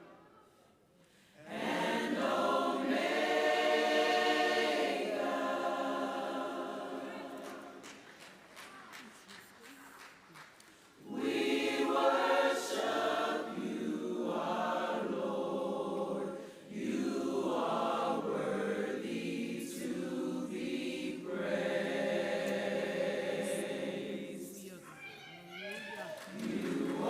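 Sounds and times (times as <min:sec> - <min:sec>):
choir singing: 0:01.4 - 0:08.0, 0:11.0 - 0:24.8, 0:26.2 - 0:27.0.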